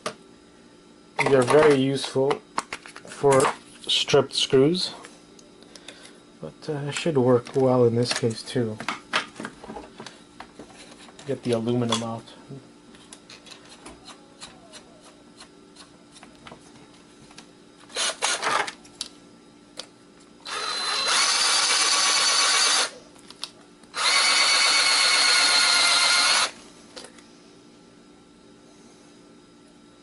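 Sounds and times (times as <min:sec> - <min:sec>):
power drill motor whine: 0:17.9 - 0:18.8, 0:20.4 - 0:23.0, 0:23.9 - 0:26.6.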